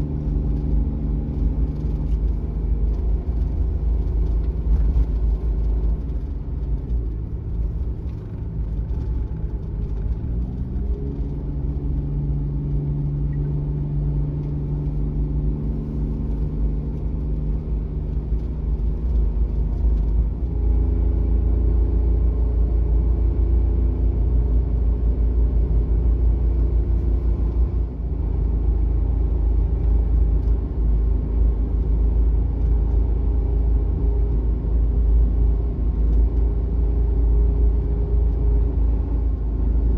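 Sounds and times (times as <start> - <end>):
road rumble: 0.0 - 39.9
van engine running: 0.0 - 39.9.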